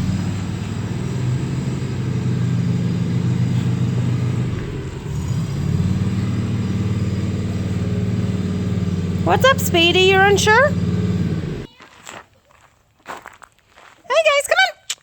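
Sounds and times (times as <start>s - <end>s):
tractor engine running: 0.0s - 11.7s.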